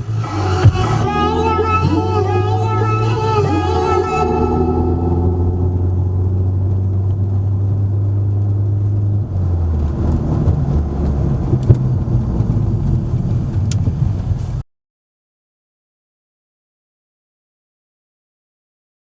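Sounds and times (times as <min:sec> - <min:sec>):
car engine running: 0:00.0 - 0:14.6.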